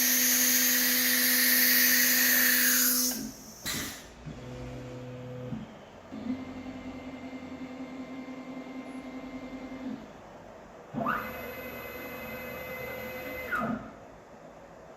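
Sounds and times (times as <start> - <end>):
motor humming with slight pulse: 0.0 - 3.6.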